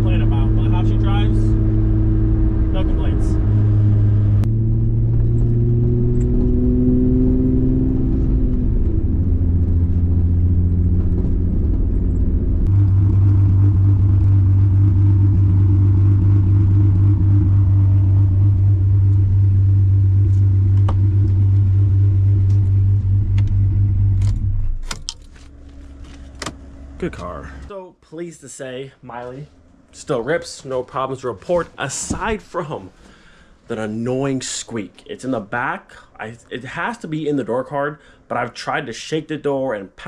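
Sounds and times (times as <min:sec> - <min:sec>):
car engine running: 0:00.0 - 0:27.7.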